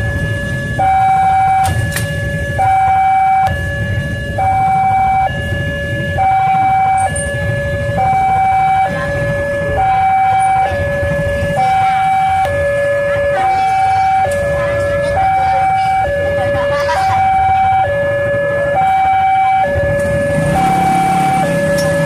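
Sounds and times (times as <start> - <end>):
level crossing alarm two-tone: 0.0 - 22.0.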